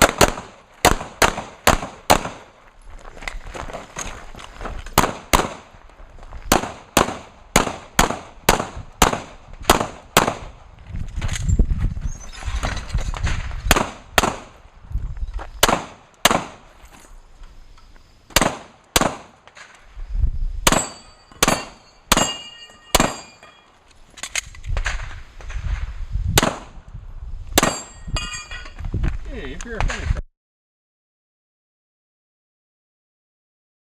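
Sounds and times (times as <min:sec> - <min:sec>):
handgun shots: 0:15.6 - 0:16.6, 0:18.3 - 0:19.3, 0:20.7 - 0:23.4
metallic ringing of steel targets: 0:20.7 - 0:23.8, 0:27.6 - 0:28.8.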